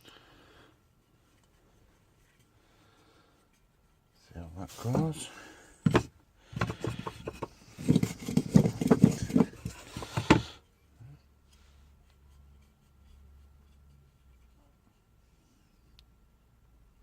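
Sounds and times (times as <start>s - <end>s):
plane parts knocking and scraping: 4.7s - 10.6s.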